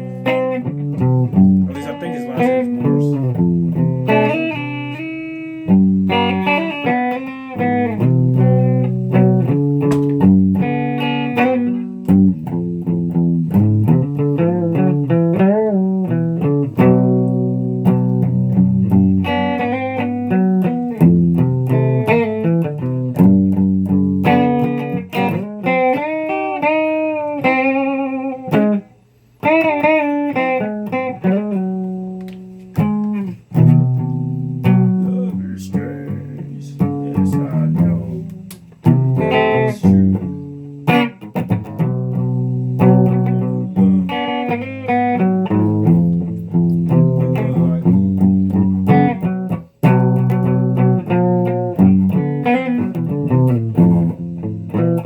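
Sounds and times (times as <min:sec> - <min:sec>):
plucked guitar music: 0:00.0 - 0:55.0.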